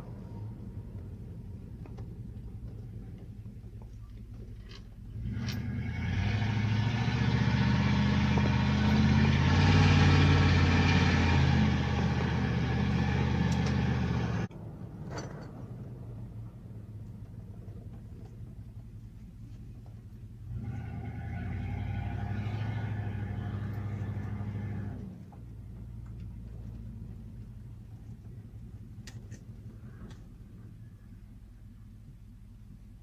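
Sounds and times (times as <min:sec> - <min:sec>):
road noise: 0:00.0 - 0:33.0
vehicle engine running: 0:05.0 - 0:14.6, 0:17.0 - 0:28.8.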